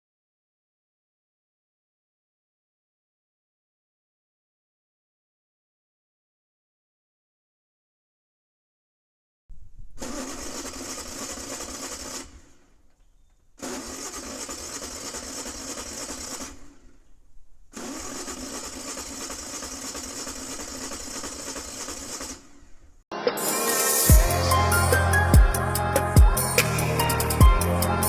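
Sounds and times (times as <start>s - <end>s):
engine starter cranking: 10.0s - 23.0s.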